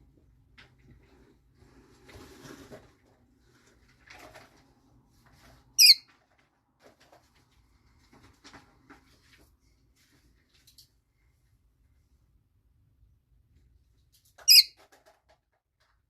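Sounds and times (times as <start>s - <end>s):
faint rustling and scratching: 0.1s - 12.4s
high-pitched bird chirp: 5.8s - 6.0s, 14.4s - 14.8s.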